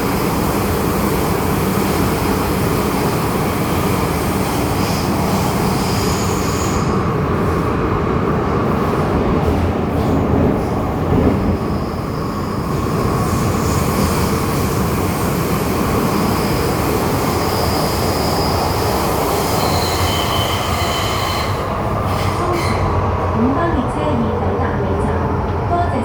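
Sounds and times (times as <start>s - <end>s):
train wheels rumbling on track: 0.0s - 26.0s
high-pitched wheel squeals: 16.2s - 23.0s.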